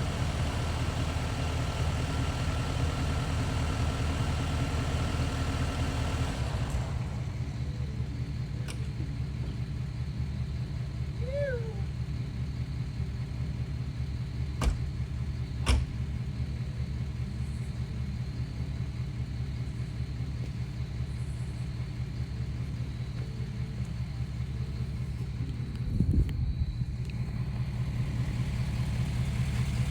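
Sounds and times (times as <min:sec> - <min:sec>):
engine running at low speed: 0:00.0 - 0:29.9
sharp knocks: 0:14.6 - 0:15.0
clatter of thumps: 0:14.6 - 0:16.1.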